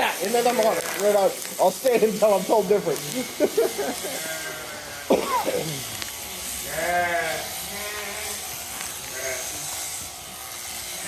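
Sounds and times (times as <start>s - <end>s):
electric clippers buzzing: 0.0s - 11.0s
sheep bleating: 0.0s - 11.0s.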